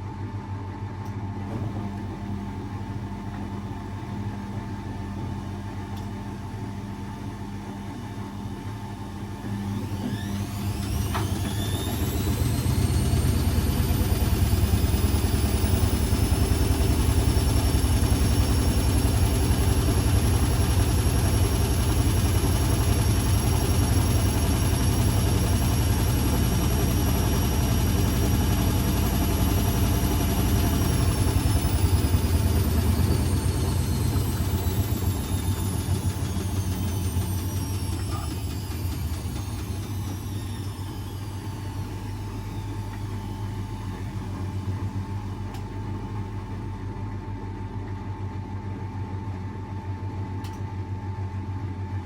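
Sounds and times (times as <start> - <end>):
washing machine motor whine: 0.0 - 52.0
washing machine drum rumbling: 10.0 - 46.4.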